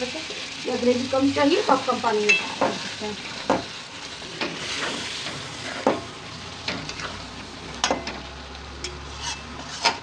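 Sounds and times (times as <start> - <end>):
curry sizzling in a pan: 0.0 - 10.0
spoon scraping and knocking pan: 2.2 - 3.8, 4.4 - 7.2, 8.8 - 10.0.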